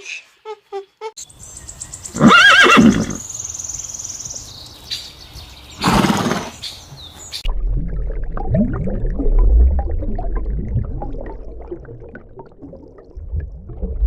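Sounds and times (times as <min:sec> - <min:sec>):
horse whinnying: 0:02.2 - 0:03.2, 0:05.8 - 0:06.6.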